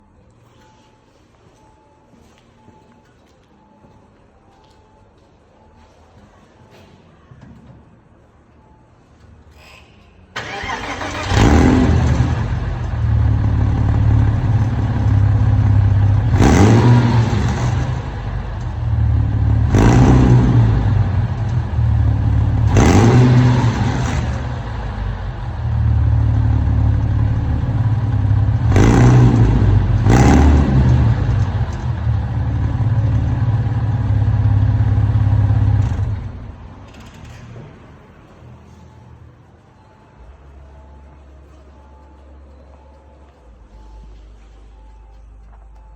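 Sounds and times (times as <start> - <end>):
car engine revving: 10.4 - 36.6.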